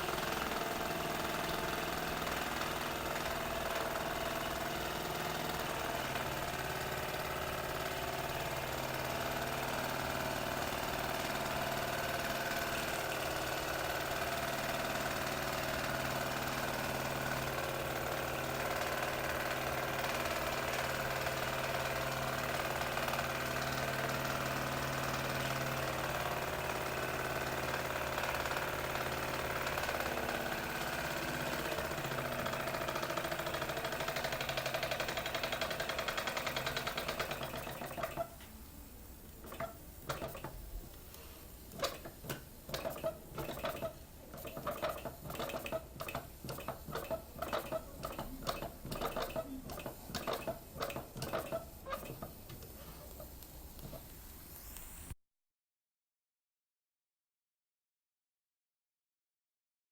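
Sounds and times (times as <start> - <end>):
toy steam engine whirring: 9.4 - 55.2.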